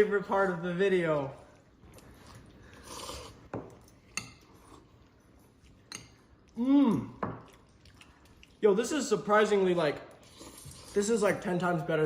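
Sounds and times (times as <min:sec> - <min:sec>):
person eating noodles: 0:01.5 - 0:08.6, 0:10.1 - 0:11.0.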